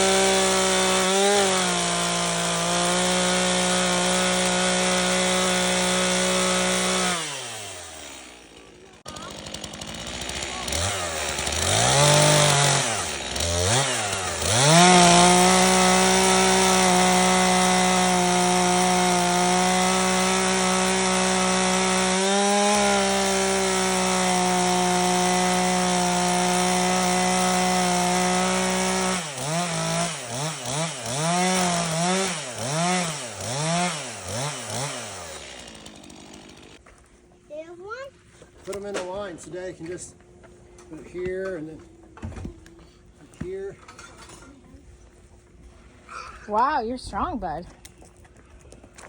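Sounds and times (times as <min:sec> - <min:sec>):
chainsaw cutting through log: 0:00.0 - 0:36.8.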